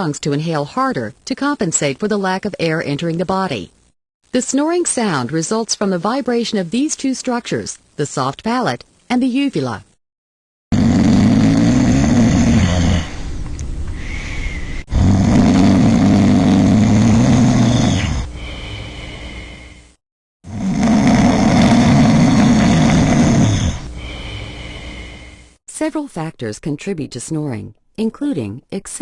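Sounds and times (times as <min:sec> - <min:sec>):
person snoring: 0:10.7 - 0:25.6.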